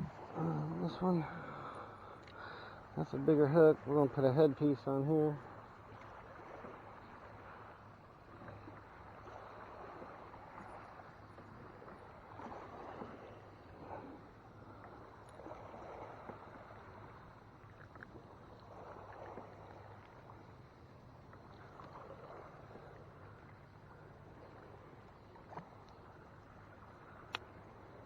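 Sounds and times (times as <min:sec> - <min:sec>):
soft water wash: 0:00.0 - 0:28.0.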